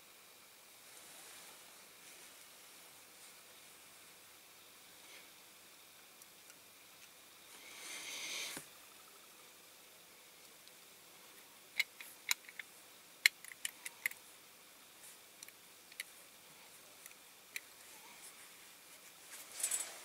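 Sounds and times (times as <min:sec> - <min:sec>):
clicks of toy car parts: 0:11.8 - 0:14.2.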